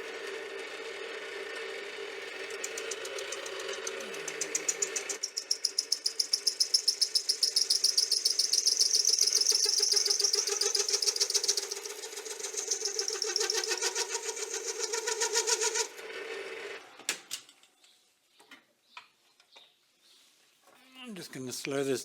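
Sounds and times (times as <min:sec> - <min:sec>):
lathe motor hum: 0:00.0 - 0:05.3, 0:09.8 - 0:16.8
high-pitched cutting squeal: 0:02.5 - 0:16.0.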